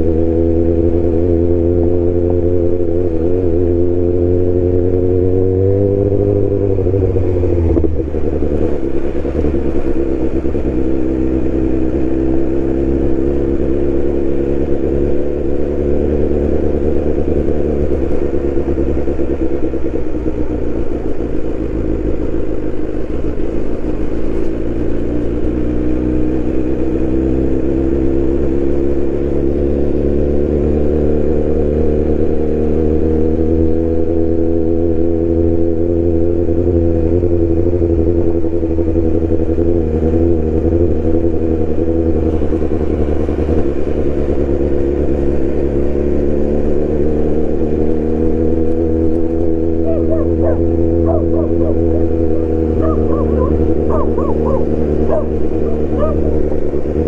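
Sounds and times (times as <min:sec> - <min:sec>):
motorcycle engine revving: 0:00.0 - 0:57.0.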